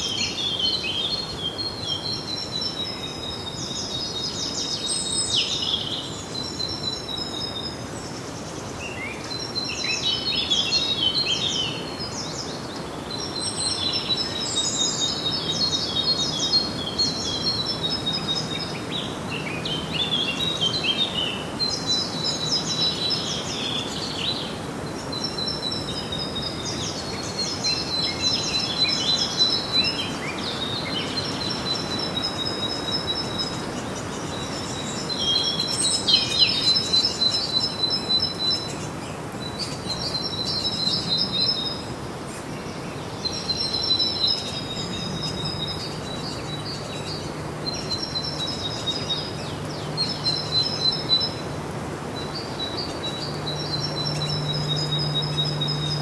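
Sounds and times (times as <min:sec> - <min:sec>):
songbirds singing: 0:00.0 - 0:56.0
steady background hiss: 0:00.0 - 0:56.0
low steady hum: 0:44.4 - 0:56.0.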